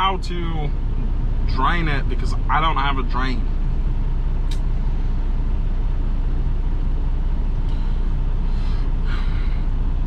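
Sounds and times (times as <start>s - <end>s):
truck diesel engine idling: 0.0s - 10.0s
sharp click: 4.5s - 4.7s.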